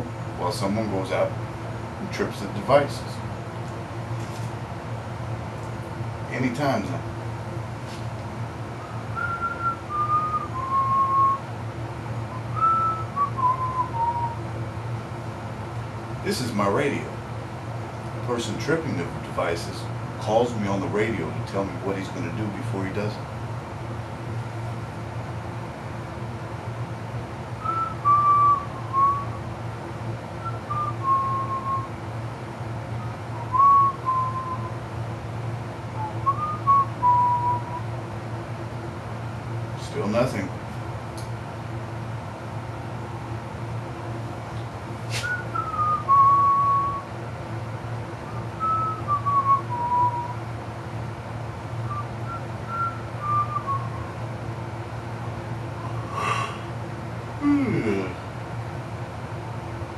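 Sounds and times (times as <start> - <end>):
steady low hum: 0.0 - 59.9
person whistling a slow tune: 9.1 - 11.4, 12.3 - 14.4, 27.6 - 29.4, 30.4 - 31.9, 33.0 - 34.8, 36.0 - 37.9, 45.2 - 47.1, 48.3 - 50.4, 51.9 - 54.2.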